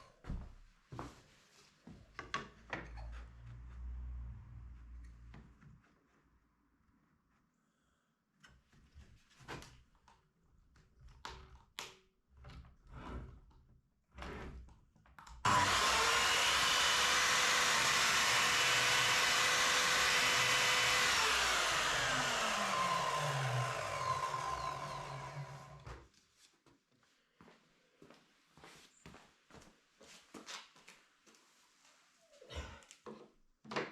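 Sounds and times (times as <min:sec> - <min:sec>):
electric motor whining: 0:15.5 - 0:25.8.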